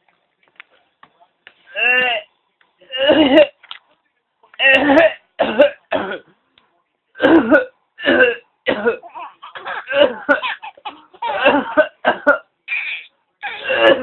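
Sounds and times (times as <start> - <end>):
man fake coughing and choking: 4.6 - 6.2, 7.2 - 12.5, 13.4 - 14.0
baby laughing: 9.0 - 11.5, 12.7 - 13.7.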